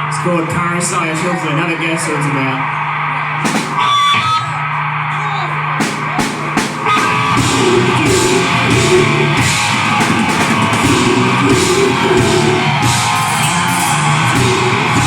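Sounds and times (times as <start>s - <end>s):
drum and cymbal hits: 3.4s - 4.4s, 5.8s - 15.0s
metal band playing: 3.4s - 4.5s, 5.2s - 15.0s
droning distorted guitar note: 3.4s - 15.0s.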